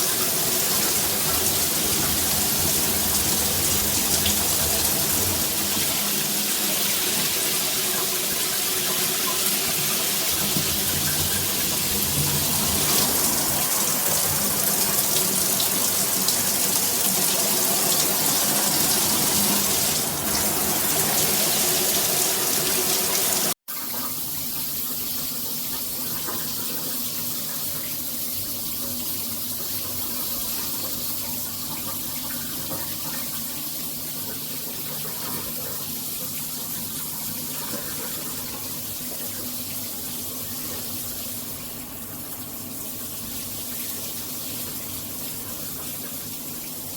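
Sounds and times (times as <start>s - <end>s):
shower water spraying: 0.0s - 23.6s.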